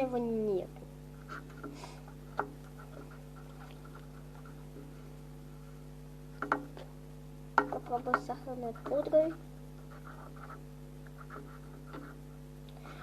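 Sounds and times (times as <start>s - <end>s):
low electrical hum: 0.0s - 13.0s
faint clicks and taps: 1.3s - 5.0s, 6.4s - 6.9s, 7.6s - 12.8s.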